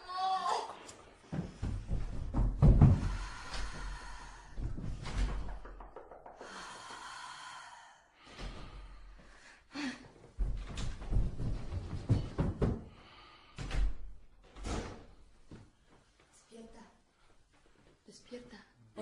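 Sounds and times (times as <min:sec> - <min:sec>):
sharp knocks and thumps: 0:01.3 - 0:03.8, 0:04.6 - 0:06.5, 0:10.4 - 0:13.0
breathy gasp: 0:03.0 - 0:04.8.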